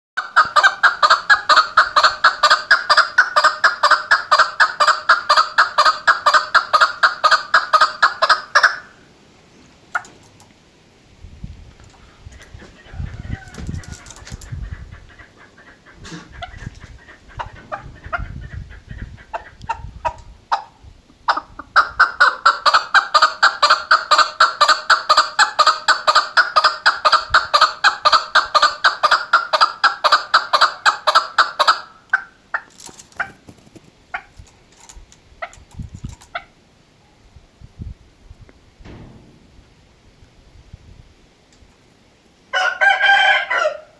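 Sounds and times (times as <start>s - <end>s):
partridge calling: 0.2s - 9.0s, 11.9s - 33.4s.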